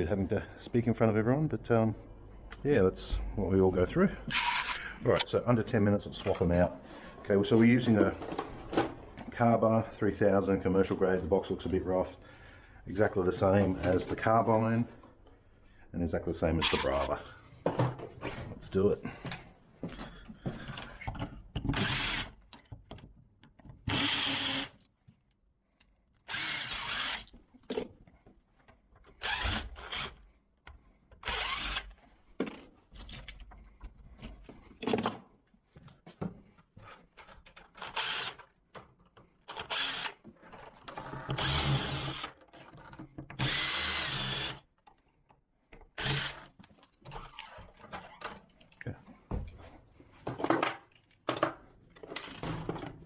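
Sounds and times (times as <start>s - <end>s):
power drill whining: 21.7s - 22.3s, 23.9s - 24.8s, 26.3s - 27.3s, 31.2s - 31.9s, 37.8s - 38.4s, 39.6s - 40.2s, 41.2s - 42.3s, 43.4s - 44.6s, 46.0s - 46.5s.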